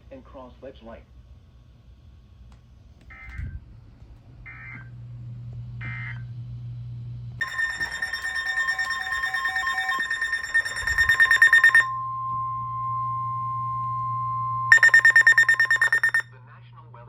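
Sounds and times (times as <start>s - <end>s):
steady alert attention tone: 7.4s - 12.0s, 14.7s - 16.2s
data warble bursts: 14.7s - 16.2s.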